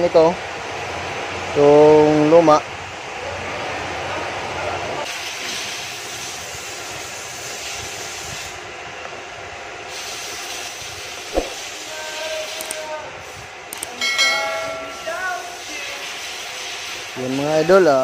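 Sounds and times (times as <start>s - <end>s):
steady hiss and rumble: 0.0s - 18.0s
sharp click: 13.7s - 14.0s.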